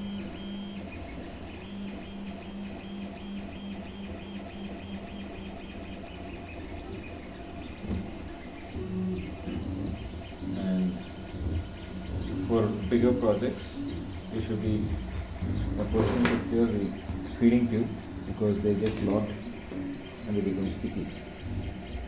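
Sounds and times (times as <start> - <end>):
steady mechanical whir: 0.0 - 22.0
stepper motors singing notes: 8.4 - 22.0.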